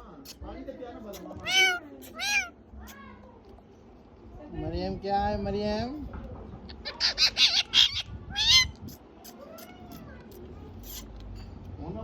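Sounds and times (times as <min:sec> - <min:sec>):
parrot imitating kitten meows: 0:01.4 - 0:02.6, 0:06.8 - 0:08.8.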